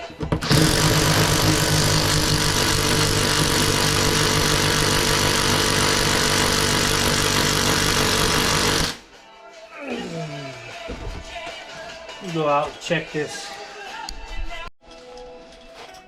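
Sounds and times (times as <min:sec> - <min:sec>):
power tool motor hum: 0:00.4 - 0:09.0.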